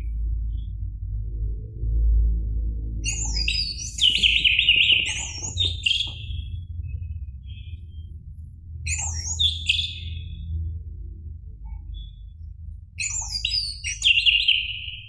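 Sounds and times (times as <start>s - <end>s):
low steady hum: 0.0s - 15.0s
thrush whistled warbling: 3.1s - 6.2s, 9.0s - 10.1s.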